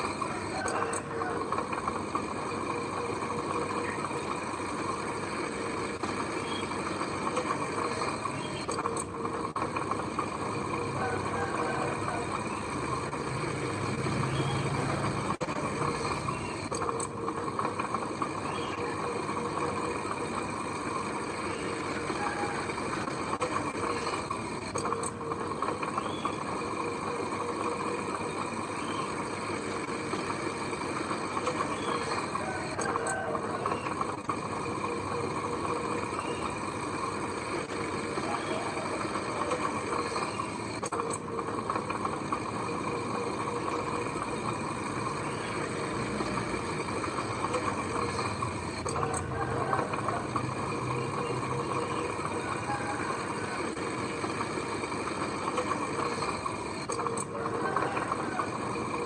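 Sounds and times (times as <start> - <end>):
heavy machinery diesel engine running: 0.0 - 59.0.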